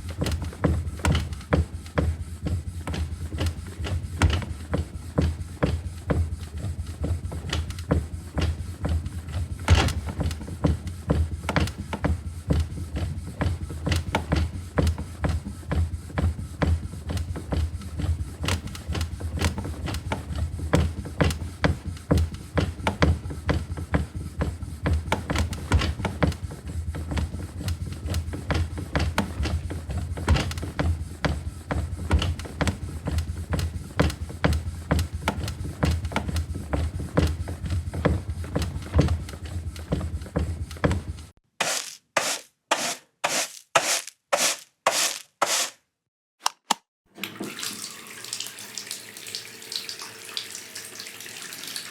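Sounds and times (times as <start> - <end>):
rubbing strokes: 41.6 - 45.8.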